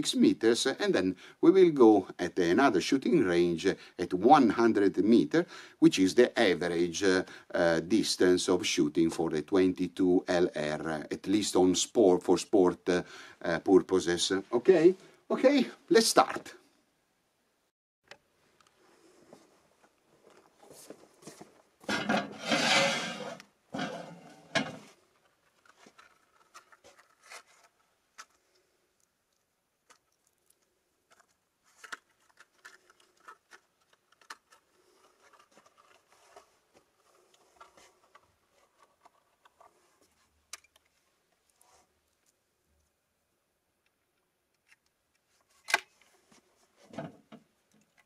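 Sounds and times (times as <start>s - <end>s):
rustling handling noise: 18.4s - 43.0s, 43.9s - 48.0s.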